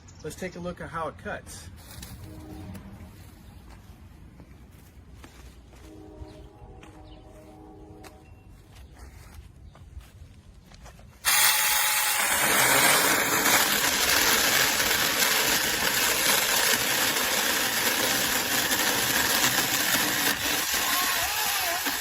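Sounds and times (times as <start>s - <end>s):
electric chainsaw cutting wood: 11.2s - 22.0s.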